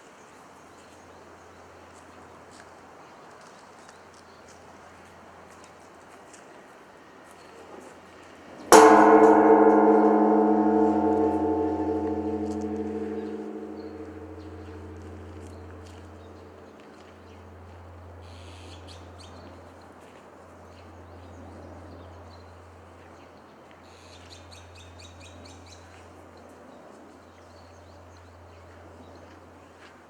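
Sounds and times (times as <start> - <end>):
temple bell humming: 8.8 - 16.5.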